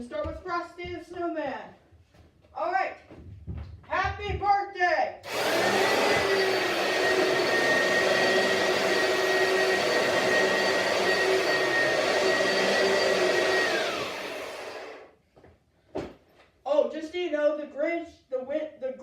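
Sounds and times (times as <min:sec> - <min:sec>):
vacuum cleaner motor whining: 0:05.2 - 0:15.1.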